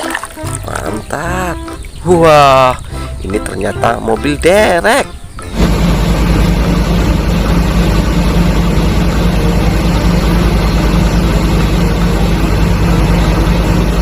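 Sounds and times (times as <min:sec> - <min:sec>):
heavy truck engine idling: 0:05.4 - 0:14.0.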